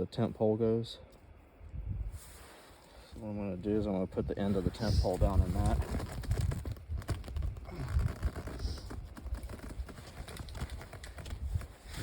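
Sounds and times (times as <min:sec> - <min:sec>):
handling rustle: 0:04.4 - 0:12.0
tent pole clicking into fitting: 0:06.2 - 0:11.7.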